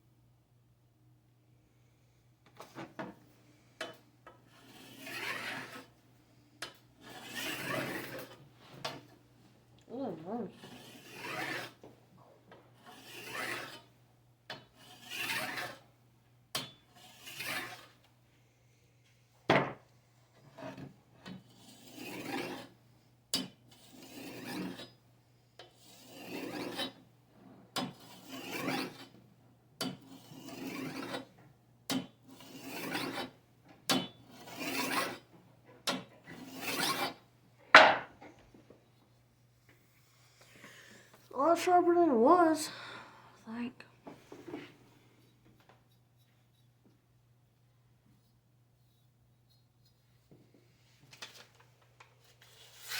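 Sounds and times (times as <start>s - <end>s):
knife strokes on a sharpener: 4.5s - 5.9s, 10.6s - 11.8s, 12.8s - 13.9s, 17.0s - 18.0s, 25.8s - 27.0s, 28.0s - 29.1s, 30.1s - 31.3s, 32.3s - 33.4s.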